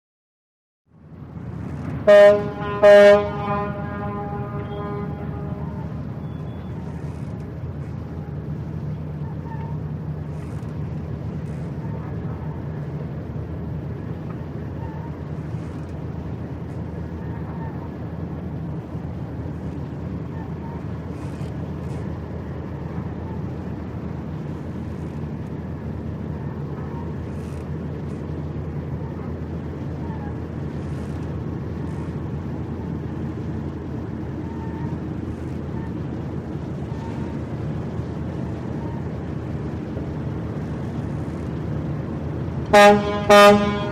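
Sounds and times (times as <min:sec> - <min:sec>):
low engine rumble: 0:00.9 - 0:43.9
faint short chirps: 0:06.2 - 0:07.4.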